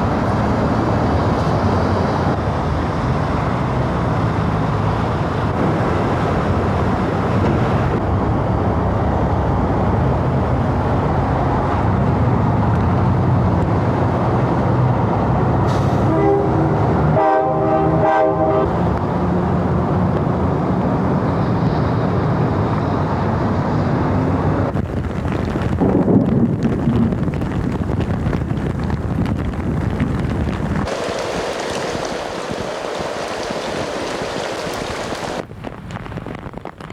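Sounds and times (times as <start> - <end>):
horn-like tone: 16.0 - 18.7
loud rushing noise: 30.8 - 35.4.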